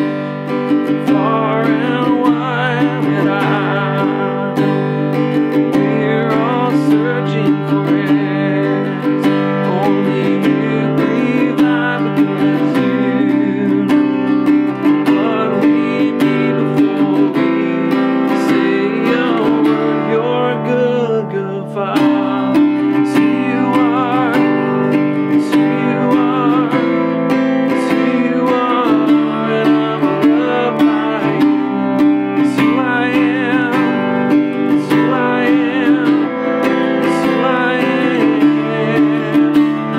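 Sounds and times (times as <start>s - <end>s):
acoustic guitar strumming: 0.0s - 39.9s
man singing: 0.0s - 39.9s.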